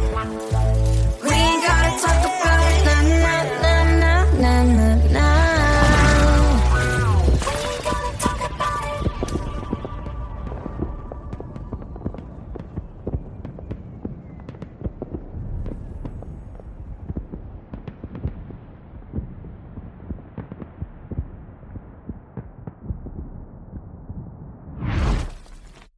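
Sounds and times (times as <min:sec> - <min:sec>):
low rumble: 0:15.1 - 0:25.4.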